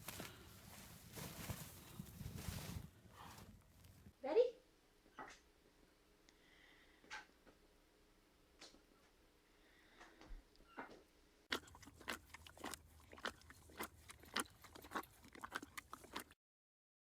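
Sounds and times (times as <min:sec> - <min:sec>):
crisp chewing crunches: 0:11.5 - 0:16.4.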